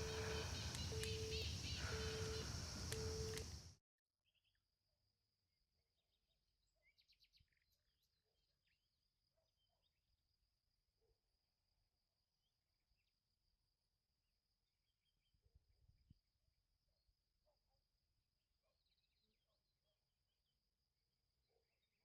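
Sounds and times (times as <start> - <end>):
bird chirps: 0.0 - 3.6
high insect drone: 0.0 - 3.7
ticking chirps: 0.0 - 3.7.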